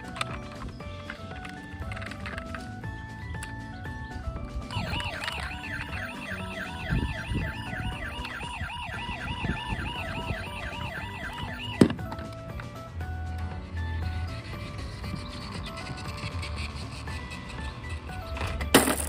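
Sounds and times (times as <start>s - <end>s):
toy siren warbling: 4.7s - 12.3s.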